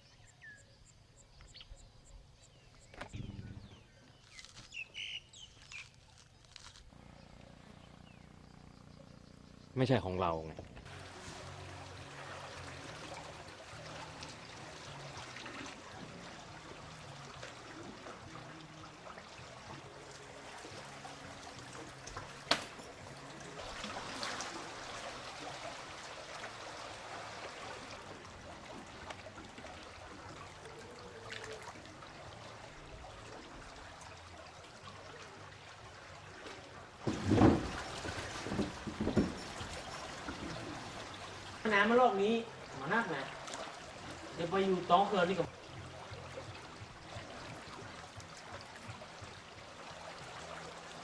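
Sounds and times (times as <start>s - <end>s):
water running and trickling: 4.1s - 51.0s
loud thumps: 22.5s - 23.0s.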